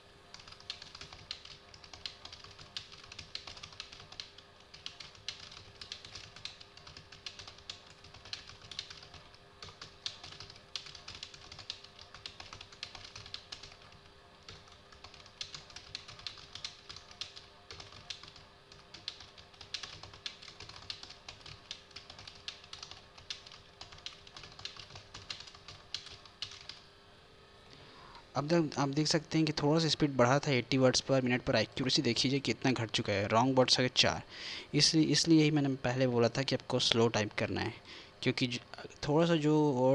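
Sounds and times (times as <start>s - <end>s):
typing on a computer keyboard: 0.3s - 26.9s.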